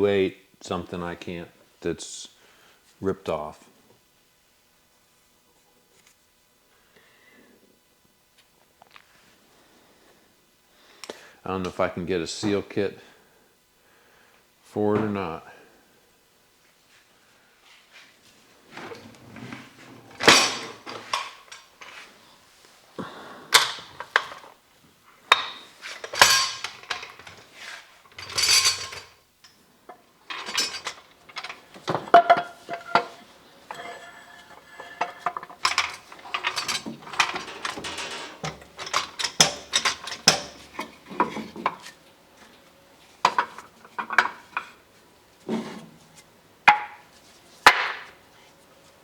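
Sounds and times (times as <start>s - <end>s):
metal tools clanking: 20.1s - 22.0s, 25.3s - 29.6s, 30.3s - 42.0s.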